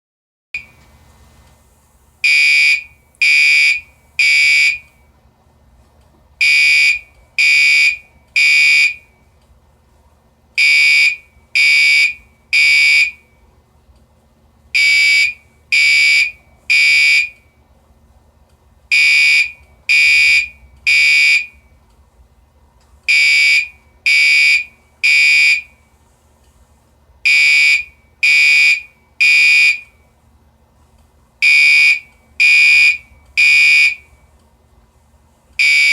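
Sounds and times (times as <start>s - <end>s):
fire alarm high-pitched beeps: 2.2s - 5.0s, 6.4s - 9.2s, 10.6s - 13.3s, 14.8s - 17.5s, 18.9s - 21.7s, 23.1s - 25.8s, 27.3s - 30.0s, 31.4s - 34.2s, 35.6s - 35.9s.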